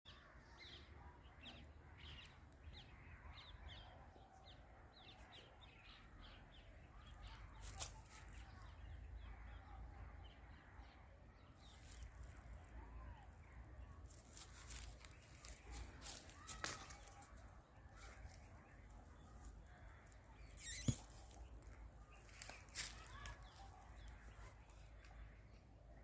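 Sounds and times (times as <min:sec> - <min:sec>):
faint bird chirps: 0:17.9 - 0:26.0.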